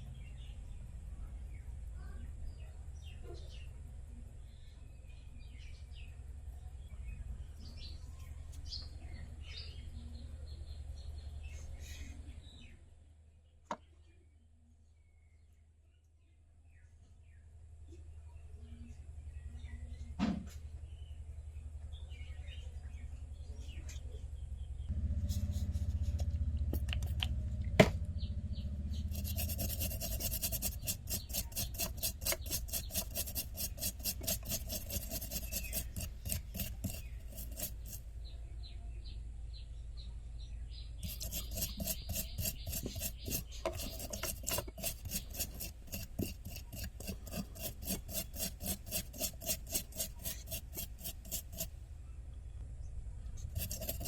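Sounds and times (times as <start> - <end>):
low hum: 24.2 - 32.2
tool scraping circuit board: 29.0 - 38.0, 41.0 - 51.7, 53.4 - 54.0.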